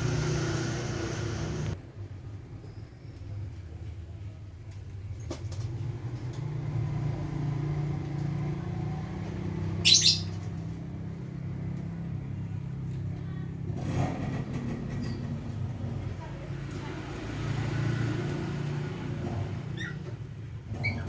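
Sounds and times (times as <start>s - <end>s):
low traffic rumble: 0.0s - 21.0s
shrill bird call: 9.8s - 10.4s.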